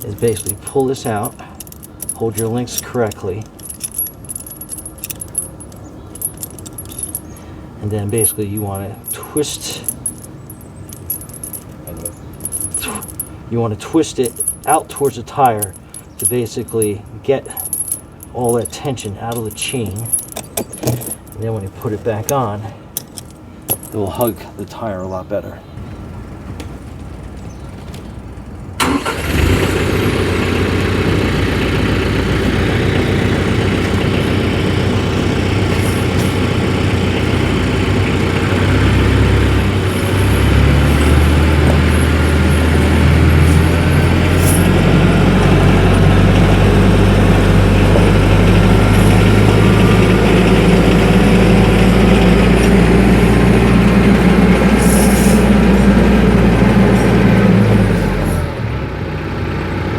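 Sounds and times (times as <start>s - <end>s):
tractor diesel engine starting: 27.1s - 59.9s.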